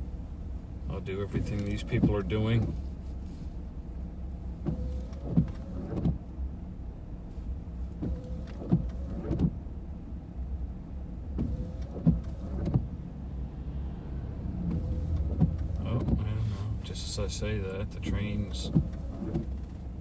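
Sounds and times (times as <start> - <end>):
car engine idling: 0.0 - 20.0
windshield wipers squeaking and knocking: 1.1 - 3.1, 4.5 - 6.3, 7.8 - 9.6, 11.2 - 13.0, 14.6 - 20.0.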